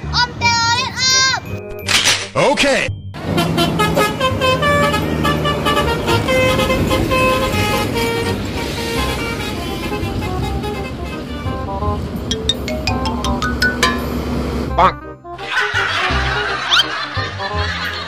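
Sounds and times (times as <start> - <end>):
multi-tone air horn melody: 3.2 - 11.7
engine rumbling: 3.2 - 14.8.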